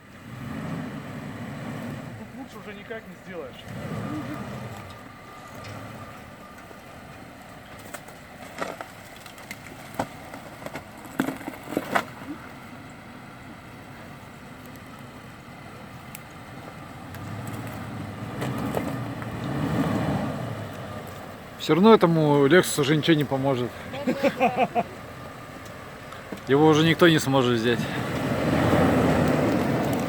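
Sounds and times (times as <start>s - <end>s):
car engine running: 0.0s - 30.0s.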